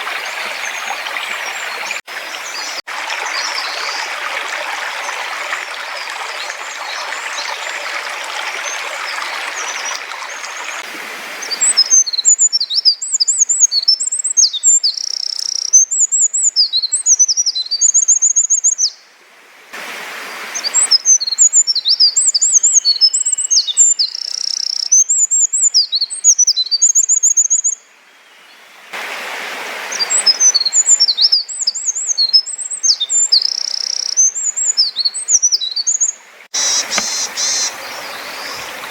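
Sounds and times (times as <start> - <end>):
stream running: 0.0 - 38.9
wren singing trills: 11.7 - 19.0, 20.8 - 27.8, 30.1 - 38.9.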